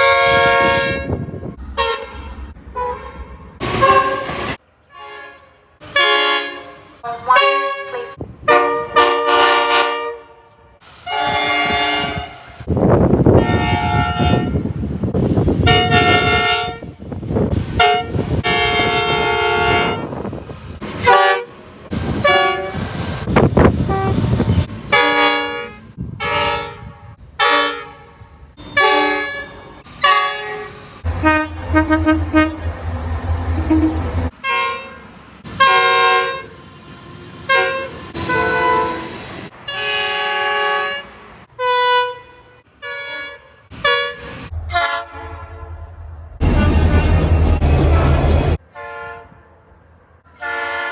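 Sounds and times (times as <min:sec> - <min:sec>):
passing train rumble: 0:00.0 - 0:04.9, 0:10.7 - 0:41.6, 0:43.7 - 0:50.9
train horn blasts: 0:00.0 - 0:12.7, 0:13.3 - 0:14.7, 0:15.4 - 0:17.0, 0:17.7 - 0:20.2, 0:21.0 - 0:21.6, 0:22.2 - 0:22.9, 0:24.9 - 0:36.5, 0:37.5 - 0:39.1, 0:39.7 - 0:45.8, 0:48.7 - 0:49.7, 0:50.3 - 0:50.9.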